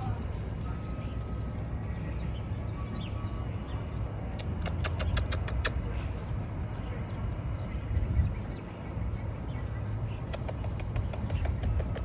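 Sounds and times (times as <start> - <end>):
city traffic rumble: 0.0 - 12.0
sharp clicks: 4.0 - 5.8, 10.3 - 12.0.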